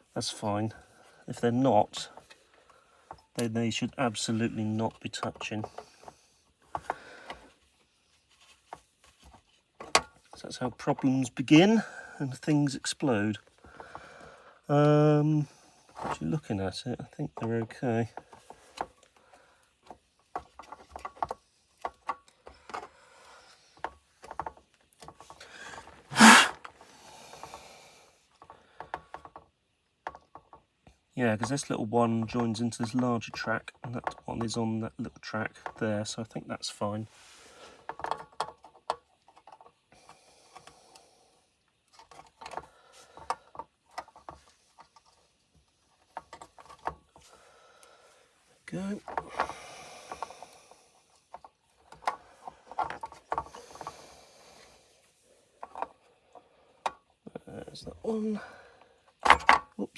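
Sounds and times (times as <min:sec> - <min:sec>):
small hand tools clicking: 0:26.1 - 0:26.6.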